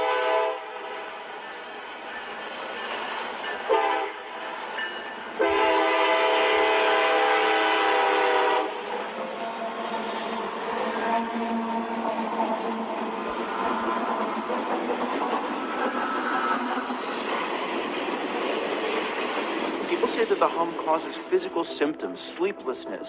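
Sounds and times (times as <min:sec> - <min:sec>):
train horn blasts: 0:00.0 - 0:01.2, 0:03.7 - 0:04.3, 0:05.4 - 0:09.9
rail rumble: 0:00.0 - 0:23.0.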